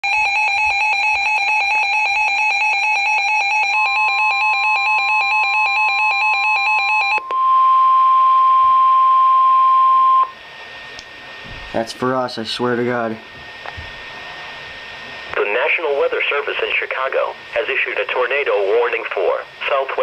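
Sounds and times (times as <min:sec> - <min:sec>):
weather radio alarm beeping: 0:00.0 - 0:10.4
steady warning alarm tone: 0:00.0 - 0:10.5.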